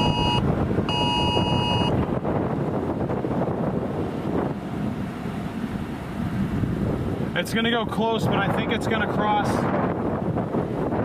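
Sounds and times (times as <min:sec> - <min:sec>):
electronic beeping tone: 0:00.0 - 0:02.0
wind buffeting microphone: 0:00.0 - 0:11.0.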